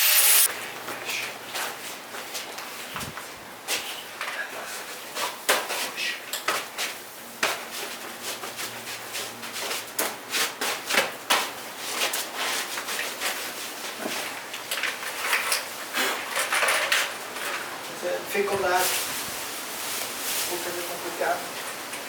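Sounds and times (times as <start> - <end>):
hand tools scraping on metal: 0.0 - 0.5.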